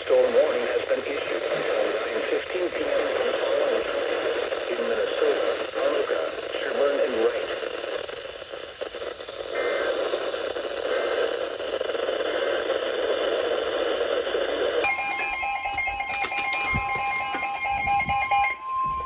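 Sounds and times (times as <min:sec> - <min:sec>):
radio static hiss: 0:00.0 - 0:19.0
emergency alert tone: 0:14.8 - 0:19.0.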